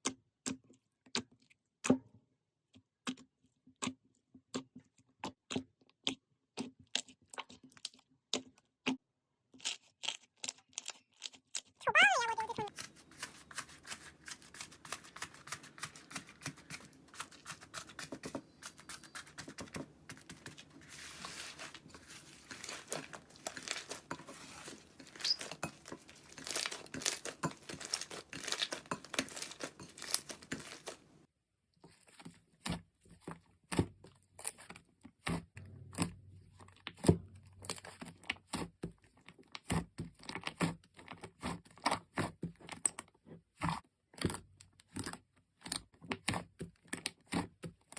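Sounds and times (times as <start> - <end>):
slime crackling and popping: 22.3 - 31.1.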